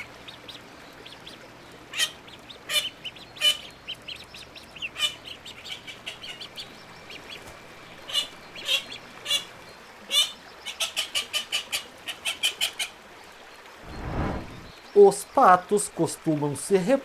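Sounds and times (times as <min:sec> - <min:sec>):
ducks quacking: 0:01.9 - 0:12.9.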